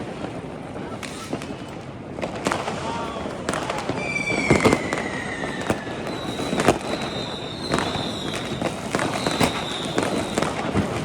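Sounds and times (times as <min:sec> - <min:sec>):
firecrackers crackling: 0:00.0 - 0:11.0
sharp firework bangs: 0:00.0 - 0:11.0
whistling rocket: 0:00.8 - 0:11.0.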